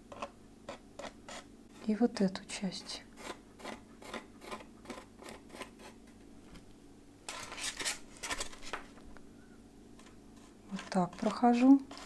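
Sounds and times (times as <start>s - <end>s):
hand tool scraping foam: 10.0s - 12.0s.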